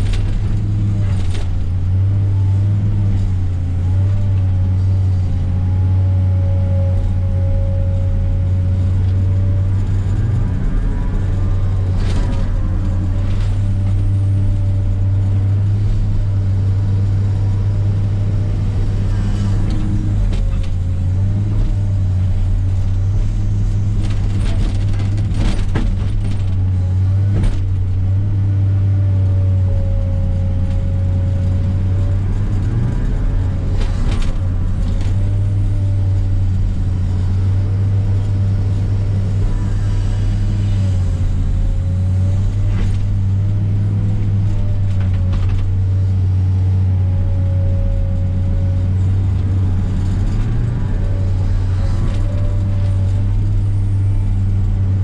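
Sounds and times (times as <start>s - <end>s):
excavator diesel drone: 0.0s - 55.0s.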